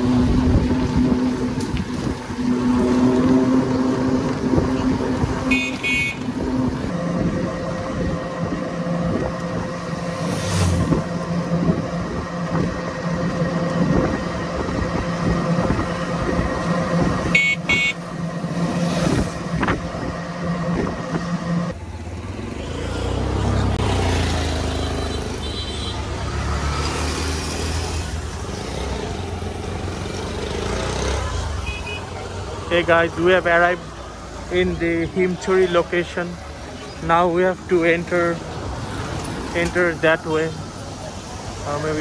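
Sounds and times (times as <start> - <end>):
road noise: 0.0 - 42.0
vehicle engine hum: 0.0 - 42.0
car horn toot: 5.4 - 6.7, 17.3 - 18.1, 24.8 - 26.1, 31.6 - 32.1.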